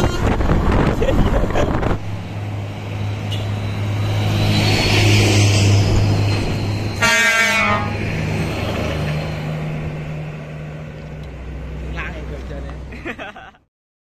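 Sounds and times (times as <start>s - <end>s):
bus horn blast: 0.0s - 0.6s, 3.3s - 3.6s, 7.0s - 8.0s
bus engine humming: 0.0s - 13.6s.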